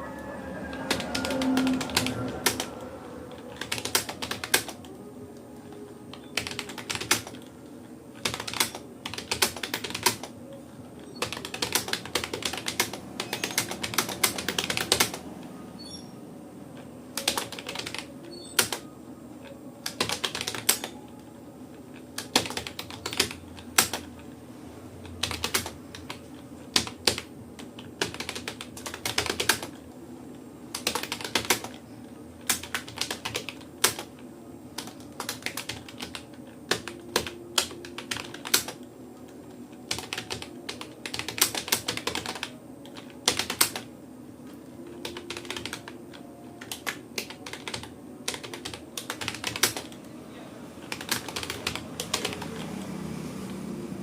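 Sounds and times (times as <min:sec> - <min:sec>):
keyboard typing: 0:00.0 - 0:16.1, 0:16.7 - 0:24.3, 0:25.0 - 0:29.9, 0:30.7 - 0:31.8, 0:32.4 - 0:43.9, 0:44.8 - 0:50.1, 0:50.8 - 0:53.6
steady low hum: 0:00.0 - 0:54.0.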